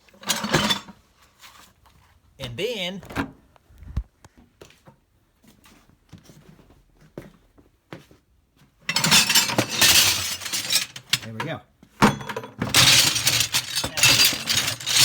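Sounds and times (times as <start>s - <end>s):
metal rattling clatter: 8.9s - 11.3s, 12.6s - 15.0s
scrap metal clinking: 8.9s - 11.4s, 12.2s - 15.0s.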